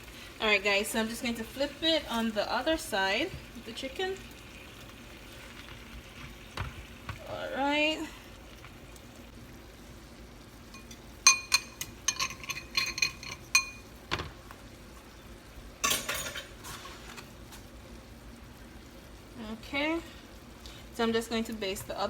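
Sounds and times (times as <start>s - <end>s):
metal utensils clinking on a pan: 10.7s - 13.9s, 15.8s - 16.8s.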